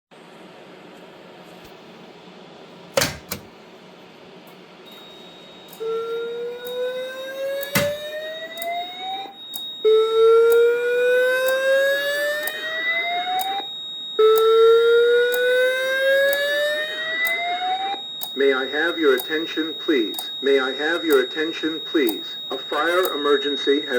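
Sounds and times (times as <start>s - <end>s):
faint high whine: 4.7s - 23.9s
whooping fire evacuation tone: 4.9s - 23.9s
sharp click: 7.6s - 8.0s.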